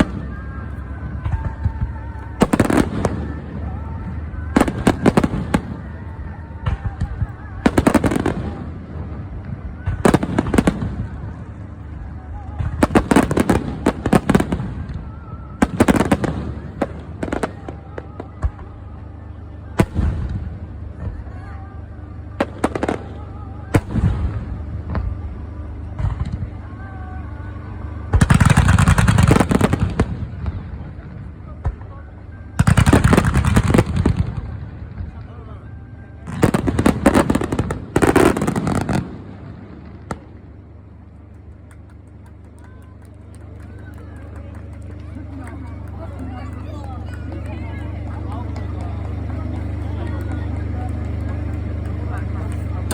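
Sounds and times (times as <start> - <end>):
fireworks bangs and crackles: 0.0 - 26.9, 27.8 - 52.9
sharp firework crack: 28.2 - 30.5.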